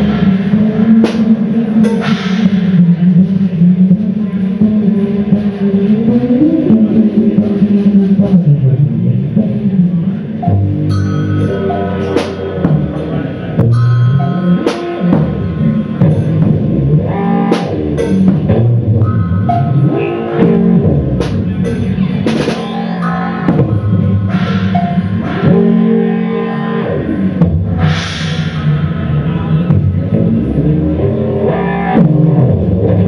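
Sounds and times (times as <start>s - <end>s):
drum kit: 0.0s - 33.0s
guitar notes: 10.0s - 32.8s.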